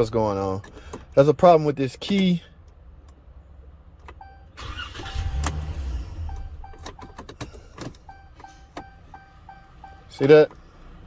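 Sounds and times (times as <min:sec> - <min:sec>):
starter cranking engine: 0:04.6 - 0:05.9
dash warning chime beeping: 0:05.9 - 0:07.2, 0:08.0 - 0:10.2.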